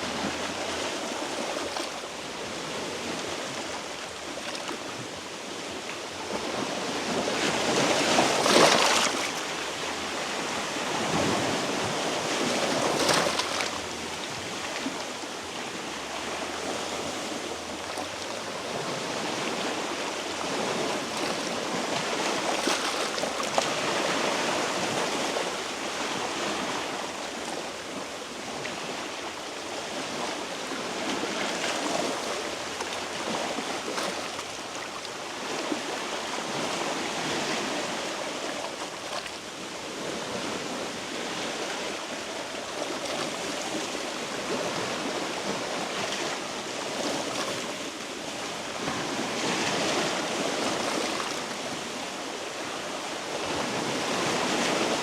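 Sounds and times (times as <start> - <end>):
waves washing against rocks: 6.2 - 29.2.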